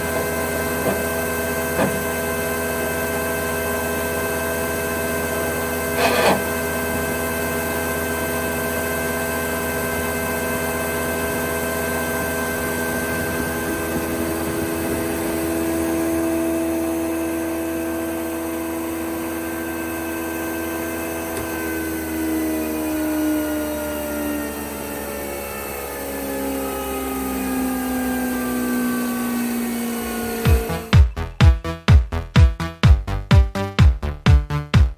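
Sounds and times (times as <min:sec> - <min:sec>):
thickness planer humming: 0:00.0 - 0:08.7.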